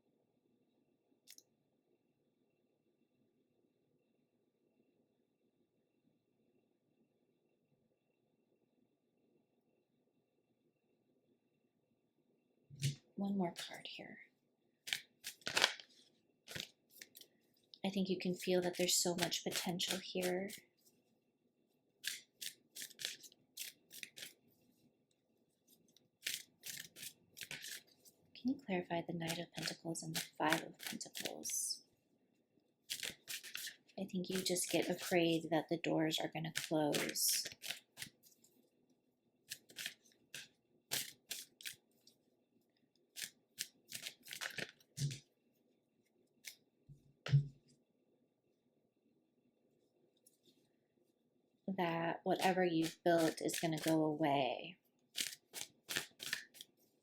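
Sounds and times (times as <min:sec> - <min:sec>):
cards shuffled by hand: 0:13.5 - 0:13.8, 0:14.8 - 0:17.8, 0:18.4 - 0:21.0, 0:22.0 - 0:24.5, 0:25.7 - 0:28.2, 0:29.2 - 0:31.6, 0:32.8 - 0:35.5, 0:36.5 - 0:38.6, 0:39.4 - 0:42.2, 0:43.0 - 0:45.3, 0:46.4 - 0:46.7, 0:52.3 - 0:54.1, 0:55.1 - 0:57.0.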